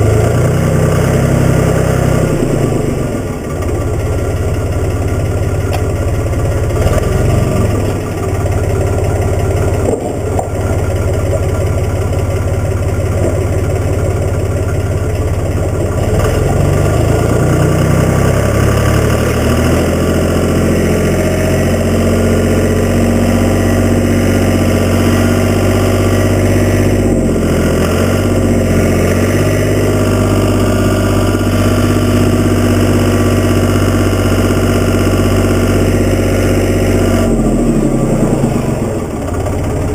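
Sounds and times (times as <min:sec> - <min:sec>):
diesel tractor engine running: 0:00.0 - 0:39.9.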